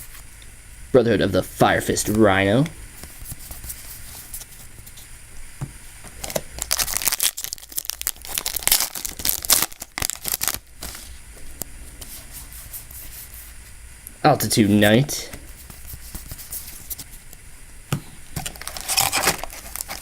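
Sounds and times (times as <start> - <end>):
foil wrapper crinkling and tearing: 6.2 - 11.2, 18.4 - 20.0.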